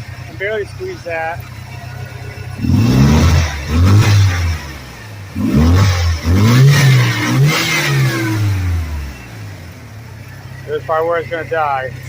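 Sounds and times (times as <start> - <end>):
engine surging at unsteady idle: 0.0 - 12.0.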